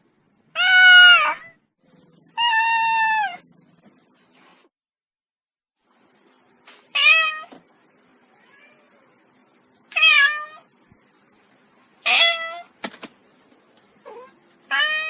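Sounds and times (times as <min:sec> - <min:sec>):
kitten meowing: 0:02.4 - 0:03.4.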